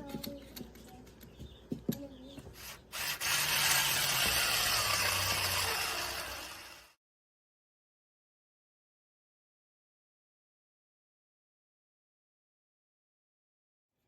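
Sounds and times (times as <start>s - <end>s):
power tool humming: 2.9s - 7.0s.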